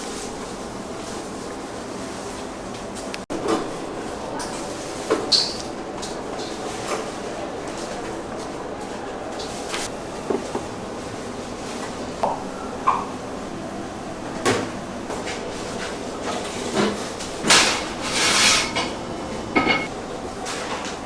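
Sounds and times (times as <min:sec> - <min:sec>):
steady background hum: 0:00.0 - 0:21.0
kitchen knocks and clinks: 0:14.4 - 0:19.9
noisy scrape: 0:15.5 - 0:19.1.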